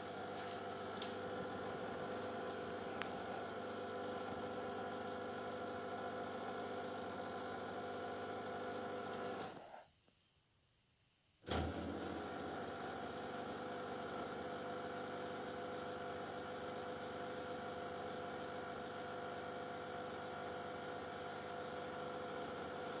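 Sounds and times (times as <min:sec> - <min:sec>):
drain pump humming: 0:00.0 - 0:08.9.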